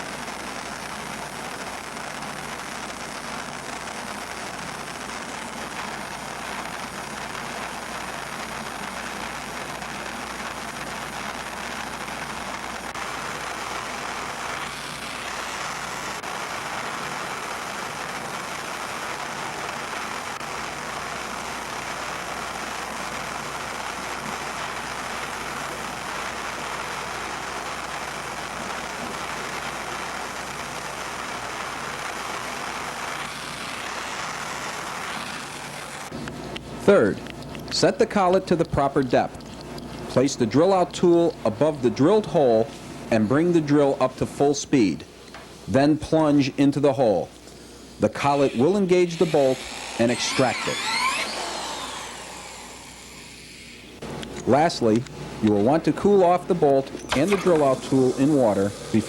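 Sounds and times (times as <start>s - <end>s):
gas torch flame hissing: 0.0s - 36.6s, 47.4s - 54.0s, 56.7s - 59.0s.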